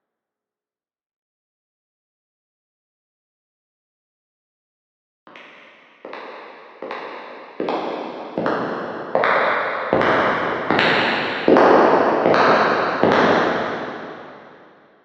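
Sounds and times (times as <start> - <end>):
echoing footsteps: 5.3 - 14.8.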